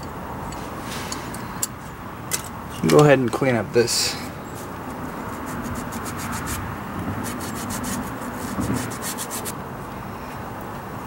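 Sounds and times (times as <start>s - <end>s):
hand scrubbing brake part: 4.5s - 9.5s.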